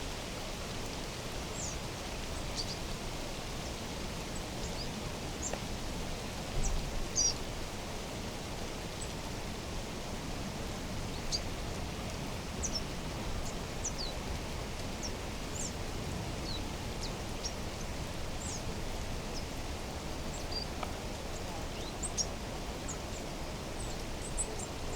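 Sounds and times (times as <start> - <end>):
outdoor background hiss: 0.0 - 24.9
small birds chirping: 1.5 - 2.9, 4.4 - 5.6, 6.6 - 7.4, 12.4 - 15.8, 16.4 - 19.5, 20.3 - 24.8.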